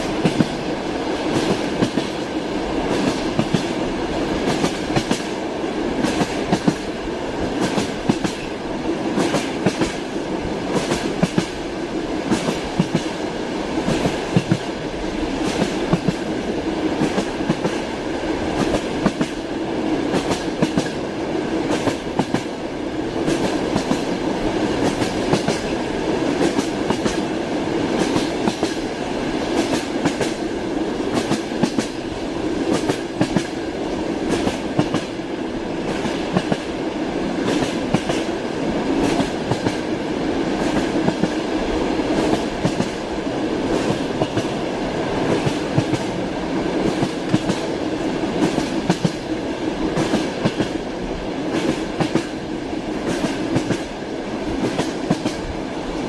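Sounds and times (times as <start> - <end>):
train wheels clacking over rail joints: 0.0 - 0.6, 1.3 - 2.2, 2.9 - 3.8, 4.4 - 5.4, 7.5 - 8.5, 9.2 - 10.1, 10.7 - 11.6, 12.3 - 13.2, 13.8 - 14.7, 15.4 - 16.3, 18.6 - 19.4, 20.1 - 21.0, 23.2 - 25.7, 26.3 - 27.3, 27.9 - 28.8, 29.5 - 30.4, 31.1 - 32.0, 32.6 - 33.6, 34.2 - 35.1, 35.8 - 36.7, 37.4 - 38.4, 39.0 - 39.9, 42.2 - 43.0, 43.7 - 44.6, 46.8 - 47.7, 48.3 - 49.3, 49.9 - 50.8, 53.0 - 53.9, 54.6 - 55.5
train rumble: 0.0 - 56.0.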